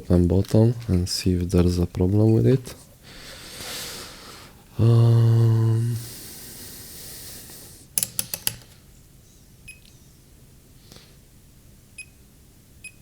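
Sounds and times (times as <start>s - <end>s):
sharp clicks of small tools: 8.0s - 8.8s.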